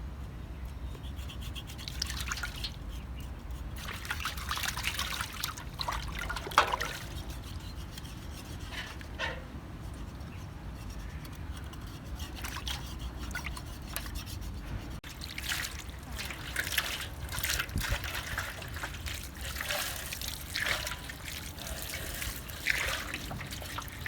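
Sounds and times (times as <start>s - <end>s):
small splashes and scrapes: 1.3s - 24.0s
water trickling: 15.0s - 24.0s.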